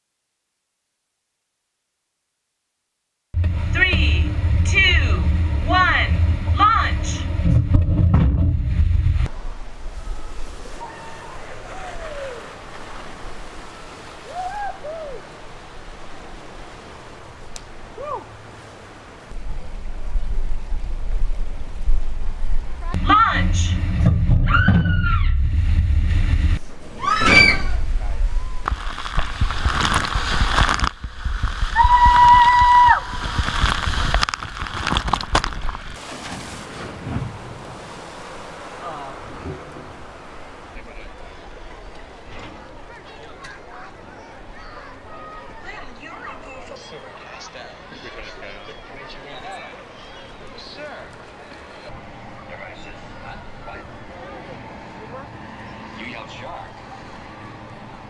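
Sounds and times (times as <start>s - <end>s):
scattered knocks: 3.4s - 9.3s
running water rushing: 3.4s - 55.5s.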